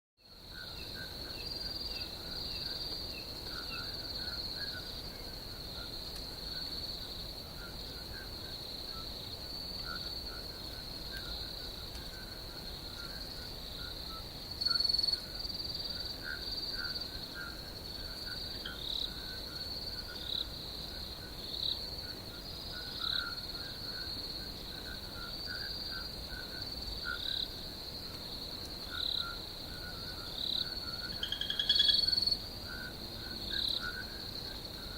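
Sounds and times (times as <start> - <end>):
insects trilling chorus: 0.2 - 34.9
lower insect chirps and calls: 30.6 - 32.4.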